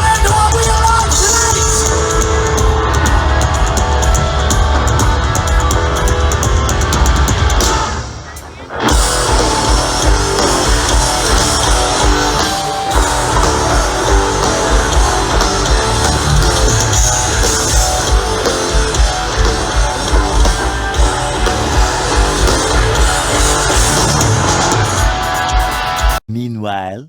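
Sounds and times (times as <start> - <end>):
electric guitar: 0.0 - 26.2
steady drum beat: 0.0 - 26.2.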